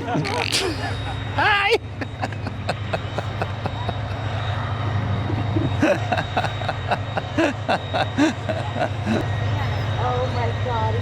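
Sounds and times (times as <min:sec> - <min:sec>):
low motor hum: 0:00.0 - 0:11.0
faint voices: 0:07.4 - 0:11.0.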